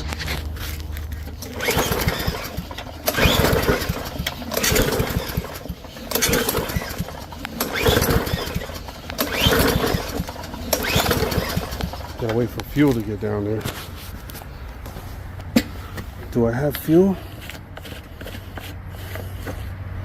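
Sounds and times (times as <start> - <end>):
mower engine turning over: 0.0 - 13.8
recoil starter pulls: 0.0 - 13.8.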